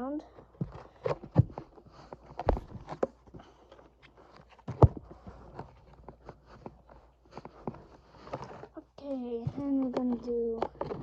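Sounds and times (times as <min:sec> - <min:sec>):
plastic knocks: 0:00.6 - 0:03.2
plastic parts clicking and rattling: 0:09.4 - 0:11.0.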